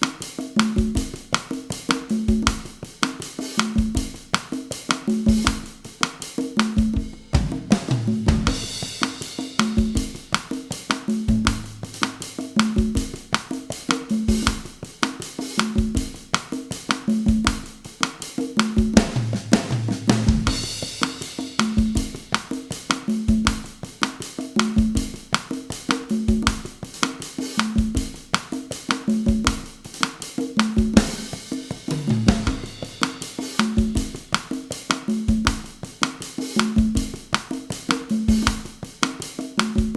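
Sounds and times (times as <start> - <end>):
bossa nova drum groove: 0.0 - 39.9
drum fill: 5.2 - 15.0, 18.6 - 27.2, 29.3 - 39.9.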